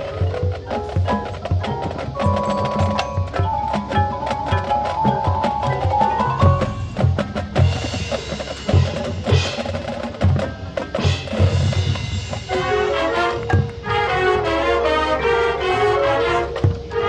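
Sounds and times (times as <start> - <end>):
bass drums and snare drums: 0.0 - 17.0
marching band melody: 0.0 - 17.0
wood block strikes: 0.1 - 9.5.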